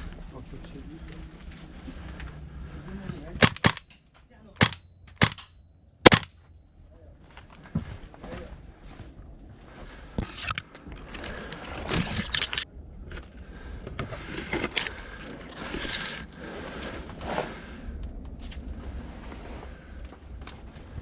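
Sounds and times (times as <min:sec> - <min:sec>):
footsteps scraping and rustling: 0:00.0 - 0:03.4, 0:07.2 - 0:12.6.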